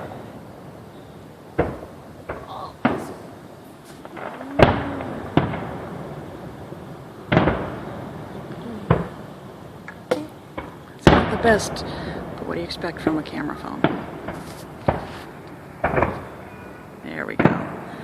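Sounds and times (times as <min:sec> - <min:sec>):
fireworks bangs echoing: 0:00.0 - 0:18.0.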